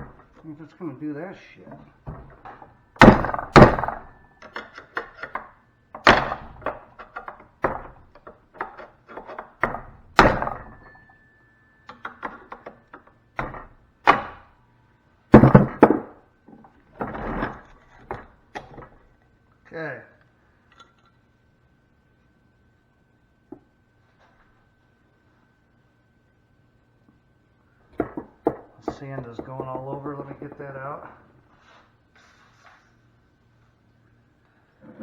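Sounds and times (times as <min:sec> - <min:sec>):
hard knocks on metal fuse: 0:02.1 - 0:11.0, 0:12.0 - 0:14.5, 0:15.3 - 0:16.2.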